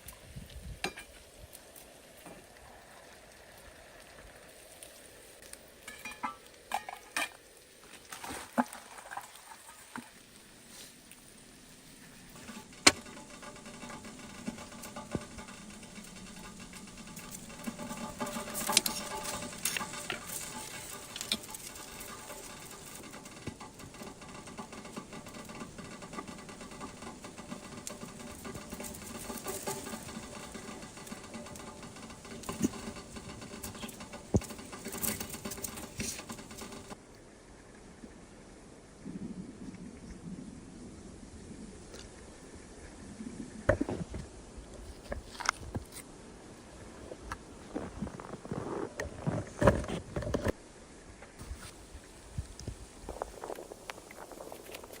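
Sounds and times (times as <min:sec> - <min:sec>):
light clicks and clatter: 0:11.9 - 0:37.0.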